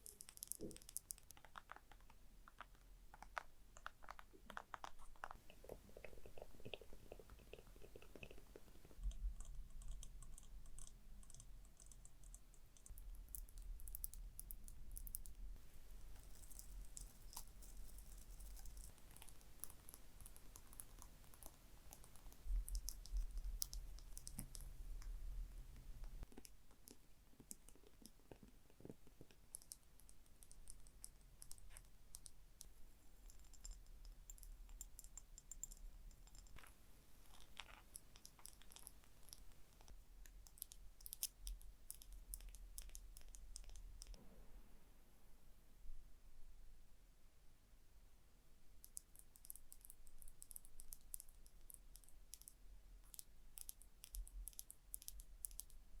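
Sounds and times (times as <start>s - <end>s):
tapping and scratching small objects: 0.0s - 44.2s, 48.8s - 56.0s.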